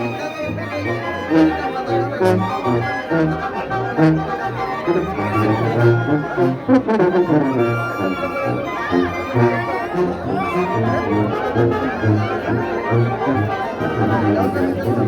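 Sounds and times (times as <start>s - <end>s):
brass band playing: 0.0s - 15.0s
low bass notes: 2.2s - 8.7s.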